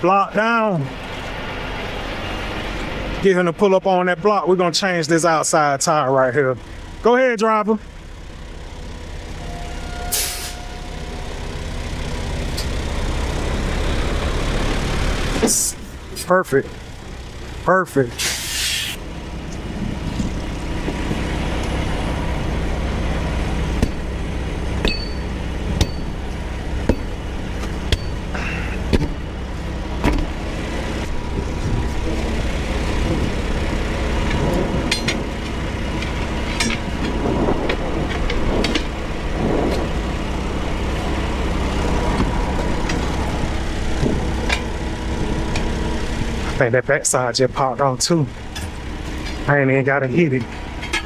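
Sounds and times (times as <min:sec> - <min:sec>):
truck engine idling: 0:00.0 - 0:51.0
metallic clanks and knocks: 0:24.8 - 0:26.2, 0:26.8 - 0:28.3, 0:34.2 - 0:39.0.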